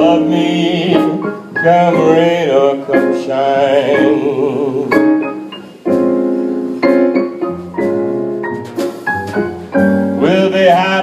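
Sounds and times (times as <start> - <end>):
person singing with vibrato: 0.0 - 5.3, 10.2 - 11.0
jazz piano chords: 0.0 - 11.0
upright bass notes: 5.9 - 11.0.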